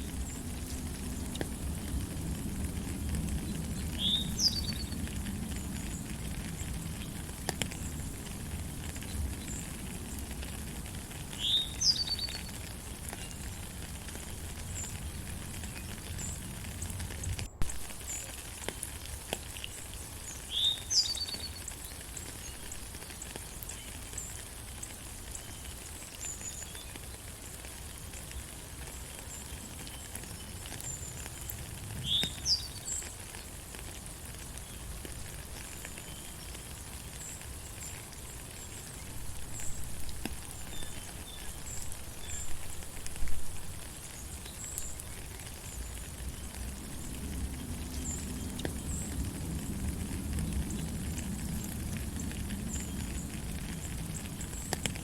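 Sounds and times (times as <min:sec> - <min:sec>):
steady rain in forest: 0:00.0 - 0:55.0
birds chirping: 0:03.4 - 0:08.0, 0:11.3 - 0:18.8, 0:19.5 - 0:26.8, 0:29.2 - 0:33.4.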